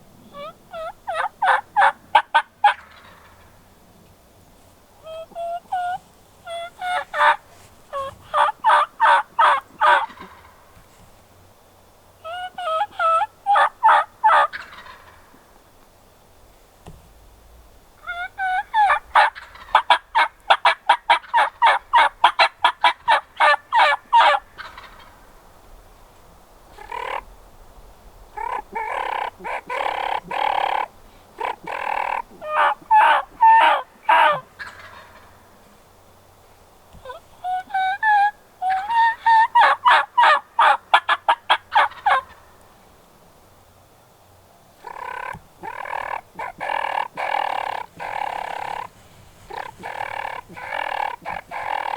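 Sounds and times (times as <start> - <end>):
turkey yelping: 0.3 - 3.4, 5.0 - 10.5, 12.2 - 15.2, 18.0 - 25.1, 26.8 - 27.3, 28.4 - 35.3, 37.0 - 42.4, 44.8 - 48.9, 49.5 - 51.9
turkey rattling call: 0.4 - 3.5, 5.0 - 10.5, 12.2 - 15.2, 18.0 - 25.1, 26.8 - 27.3, 28.4 - 35.3, 37.0 - 42.4, 44.8 - 48.9, 49.5 - 51.9.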